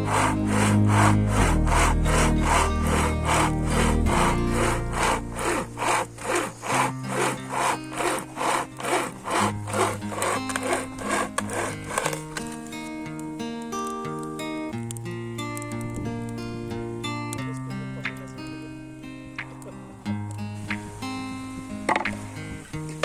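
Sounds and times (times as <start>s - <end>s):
background music: 0.0s - 12.1s
serrated blade sawing: 0.0s - 12.6s.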